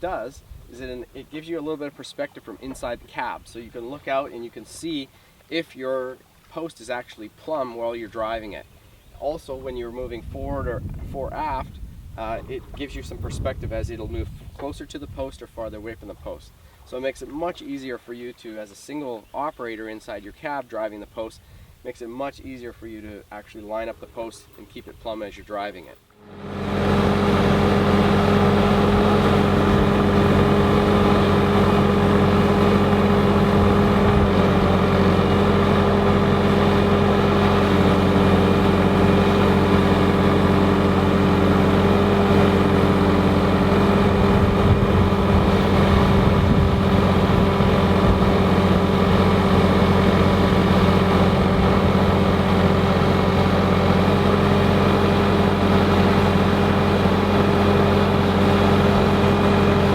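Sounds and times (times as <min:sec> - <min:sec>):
skid steer engine running: 0:26.2 - 0:59.9.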